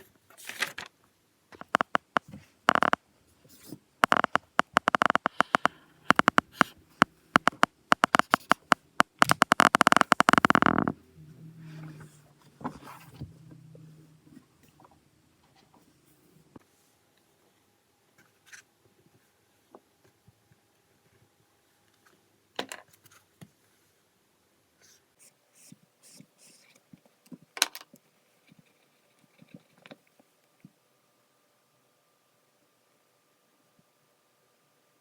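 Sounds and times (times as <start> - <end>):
sharp clicks and taps: 1.6 - 3.0, 4.0 - 6.7, 7.3 - 10.9.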